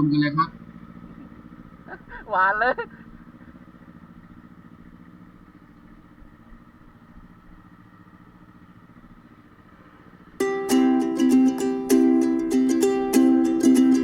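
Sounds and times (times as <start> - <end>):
motorcycle engine idling: 0.0 - 14.0
plucked ukulele music: 10.4 - 14.0.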